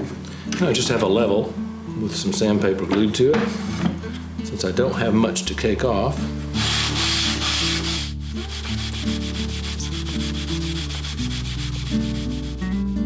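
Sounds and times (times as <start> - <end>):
guitar music: 0.0 - 13.0
sandpaper rubbing wood: 6.5 - 13.0.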